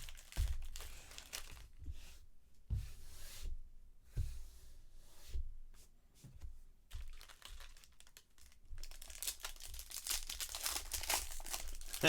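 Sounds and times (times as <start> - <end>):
foil wrapper crinkling and tearing: 0.0 - 1.7, 7.0 - 12.0
soft handling knocks: 2.6 - 3.0.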